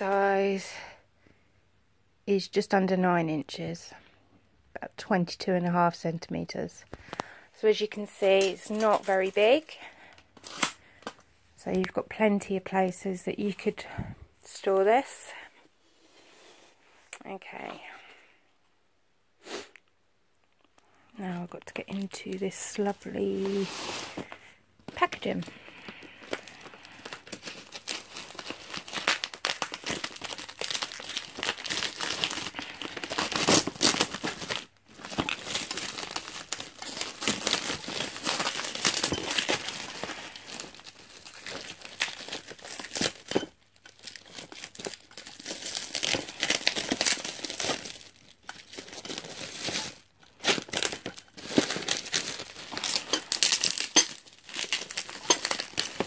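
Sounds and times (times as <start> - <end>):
plastic packaging crinkling and tearing: 6.9 - 11.2, 21.2 - 56.0.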